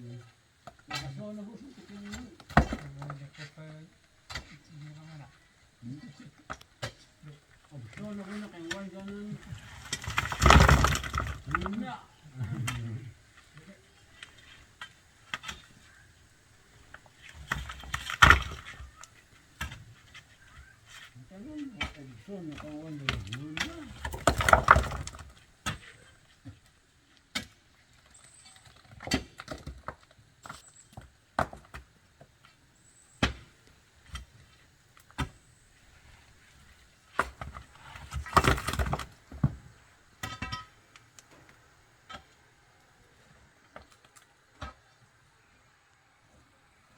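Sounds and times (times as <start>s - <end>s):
stones and tools clattering: 1.8s - 3.6s, 6.0s - 26.7s, 27.3s - 32.5s, 36.2s - 42.3s.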